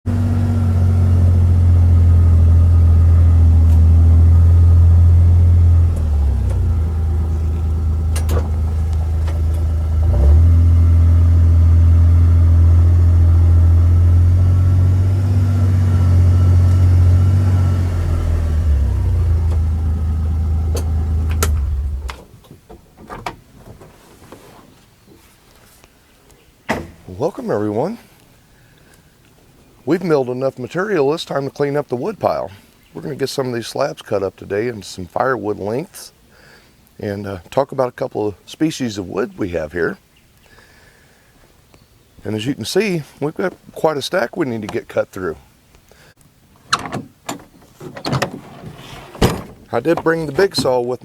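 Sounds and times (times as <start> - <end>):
vehicle engine running: 0.0 - 22.2.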